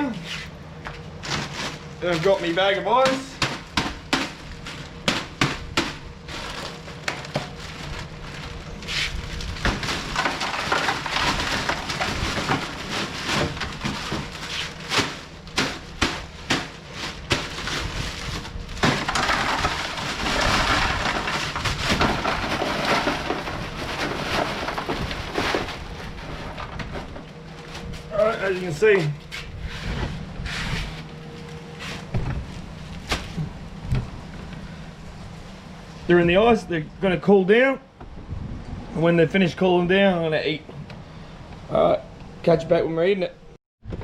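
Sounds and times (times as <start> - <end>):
ice cubes clattering and crunching: 1.2 - 26.9.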